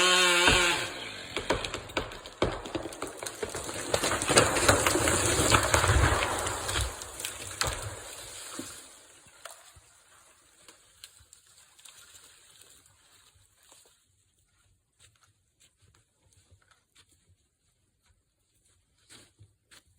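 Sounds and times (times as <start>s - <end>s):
tree falling with wood cracking: 0.0s - 10.9s.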